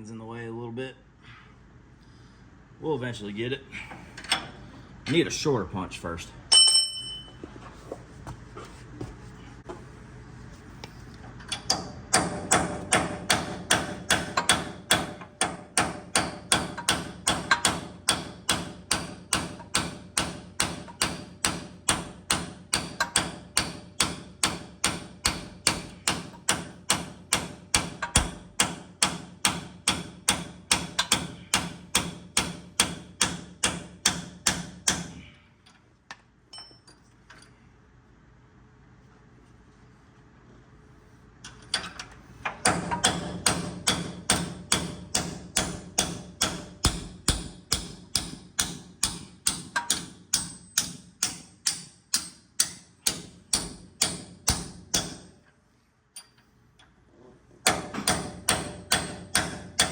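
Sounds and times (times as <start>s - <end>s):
hammer striking metal punch: 6.5s - 7.4s, 11.7s - 35.2s, 42.6s - 55.3s, 57.6s - 59.9s.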